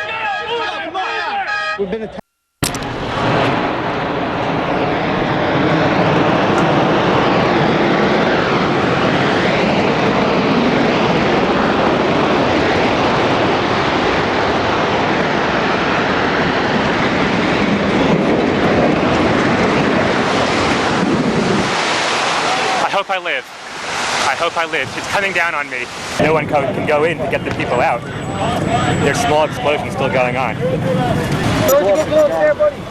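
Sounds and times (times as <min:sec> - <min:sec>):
rumbling roar of building collapsing: 0:02.7 - 0:21.7.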